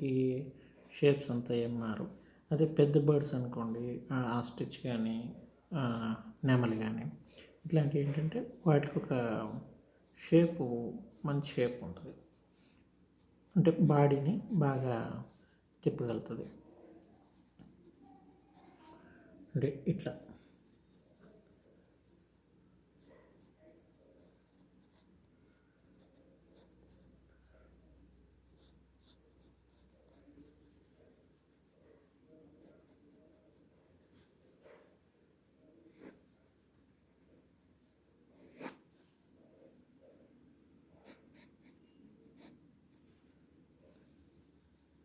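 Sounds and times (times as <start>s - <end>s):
pencil sketching on paper: 7.6s - 15.7s, 16.4s - 19.2s, 20.1s - 40.2s, 40.9s - 45.0s.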